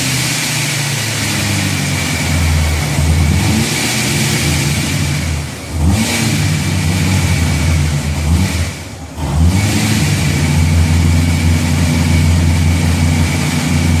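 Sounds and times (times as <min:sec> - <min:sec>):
car engine revving: 0:00.0 - 0:14.0.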